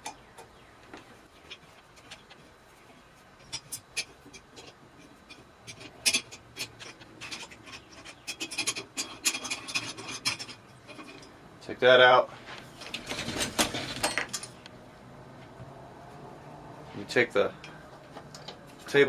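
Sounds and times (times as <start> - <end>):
hand tool metallic clicks and scraping: 3.4 - 11.4.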